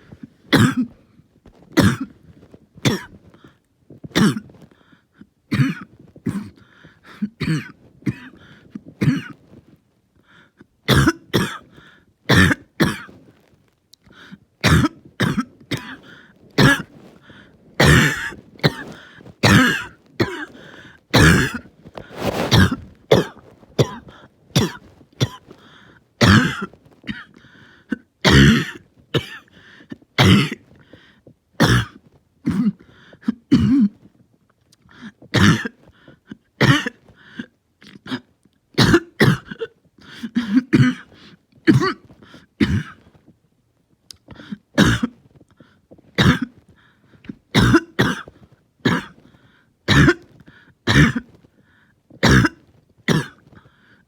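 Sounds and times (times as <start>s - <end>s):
person coughing harshly: 0.5s - 1.0s, 1.8s - 2.2s, 2.8s - 3.2s, 4.1s - 4.6s, 5.5s - 9.4s, 10.9s - 13.2s, 14.2s - 30.7s, 31.6s - 34.0s, 34.9s - 43.1s, 44.3s - 45.2s, 46.2s - 46.6s, 47.5s - 49.3s, 49.9s - 51.4s, 52.2s - 53.5s.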